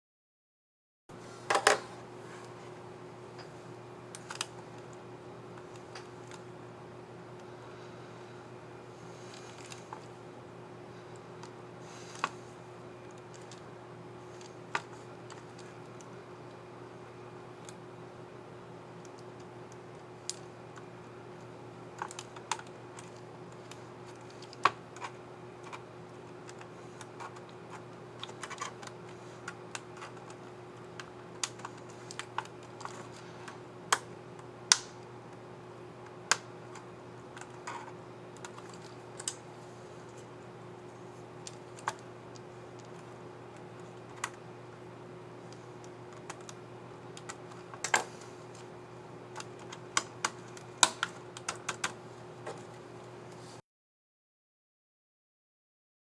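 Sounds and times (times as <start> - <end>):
plastic keyboard key clicks: 49.4 - 52.0.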